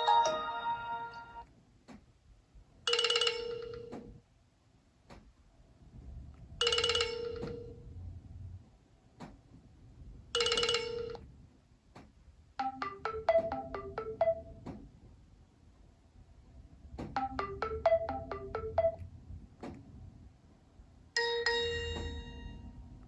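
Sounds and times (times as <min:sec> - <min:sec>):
bright chime tones: 0:00.0 - 0:01.4
marimba-like ringtone notes: 0:00.0 - 0:01.4, 0:12.6 - 0:14.6, 0:17.2 - 0:19.0.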